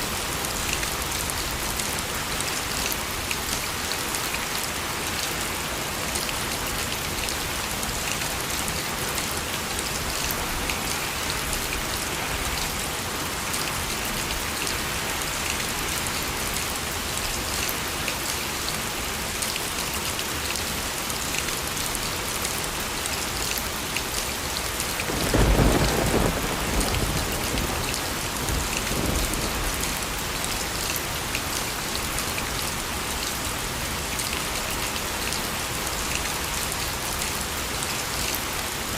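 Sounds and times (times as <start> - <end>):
rain falling: 0.0 - 38.9
thunder clap and rumble: 25.1 - 30.8.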